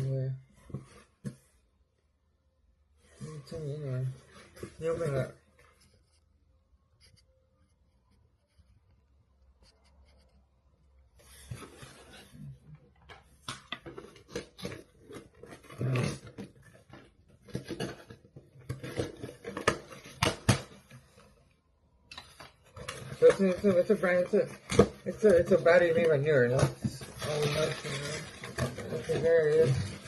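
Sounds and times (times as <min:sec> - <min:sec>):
packaging rustling and crinkling: 0:22.2 - 0:30.0.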